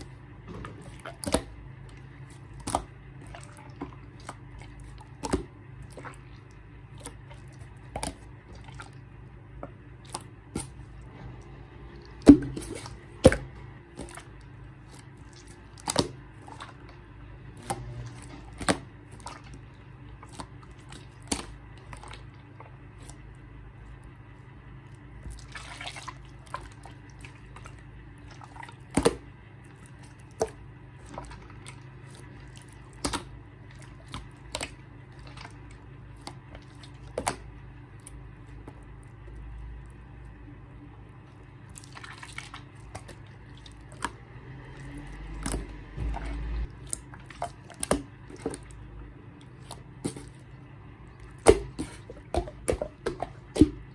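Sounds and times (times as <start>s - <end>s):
faint steady hum: 0.0s - 53.9s.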